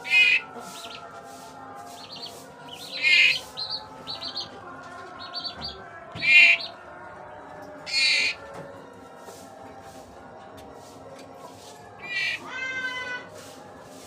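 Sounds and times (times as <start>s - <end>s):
magpie-robin harsh calls: 0.0s - 1.0s, 2.1s - 4.5s, 6.2s - 6.7s, 7.9s - 8.4s, 12.0s - 13.2s.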